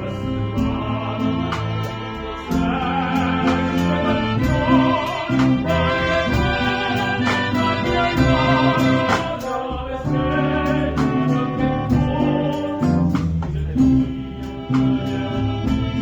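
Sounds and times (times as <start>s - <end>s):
wind and brass chords: 0.0s - 13.2s, 14.0s - 16.0s
bass line: 0.0s - 16.0s.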